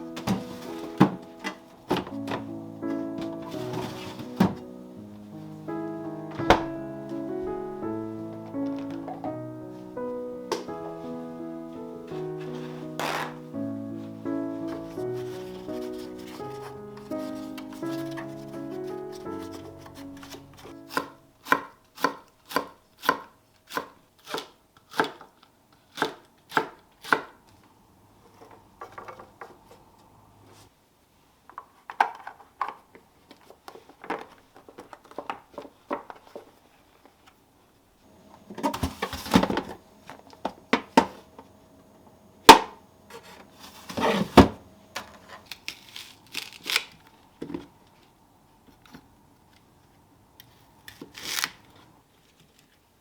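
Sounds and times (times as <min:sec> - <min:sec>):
soft handling sounds: 0:00.0 - 0:20.8
knife chopping on cutting board: 0:20.2 - 0:25.2.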